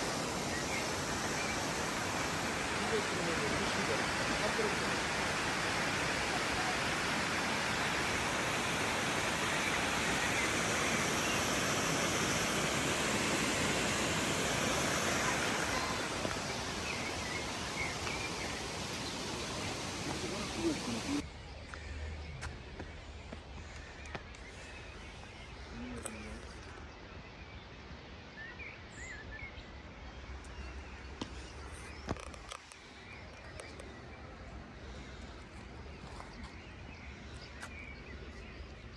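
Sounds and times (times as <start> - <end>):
bird chirping: 0.0 - 21.2
waterfall rushing: 0.0 - 21.2.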